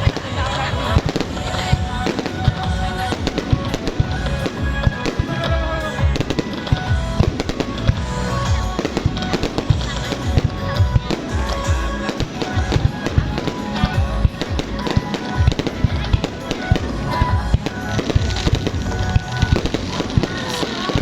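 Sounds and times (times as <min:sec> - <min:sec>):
fireworks booms and cracks: 0:00.0 - 0:21.0
music from sound system: 0:00.0 - 0:21.0.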